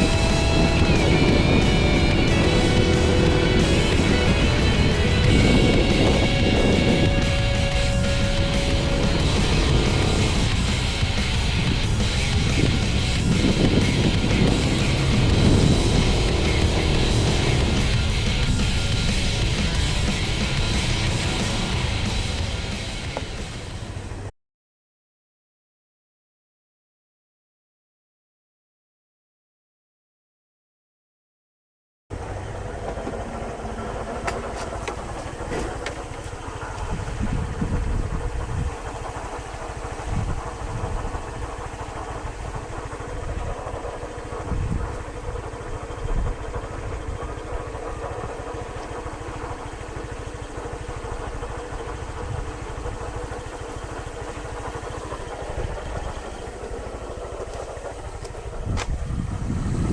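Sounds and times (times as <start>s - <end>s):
wind on microphone: 0.0s - 19.0s, 36.6s - 43.8s, 44.4s - 45.2s, 58.6s - 59.9s
scooter engine running: 0.0s - 24.3s, 32.1s - 59.9s.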